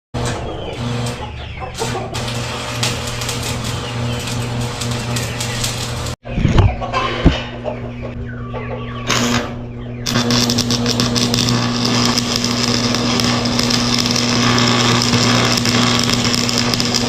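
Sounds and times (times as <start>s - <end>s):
welding arc crackling: 0.2s - 1.2s, 1.8s - 6.2s, 9.1s - 9.5s, 10.1s - 17.0s
welding machine hum: 0.2s - 6.2s, 9.1s - 17.0s.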